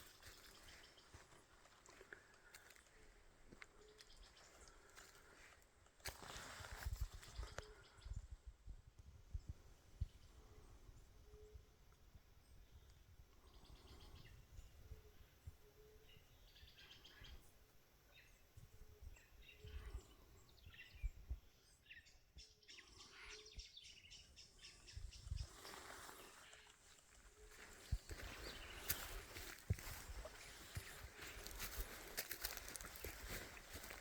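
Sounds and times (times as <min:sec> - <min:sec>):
faint bird chirps: 0:00.0 - 0:05.6, 0:09.3 - 0:34.0
soft footsteps: 0:25.7 - 0:34.0.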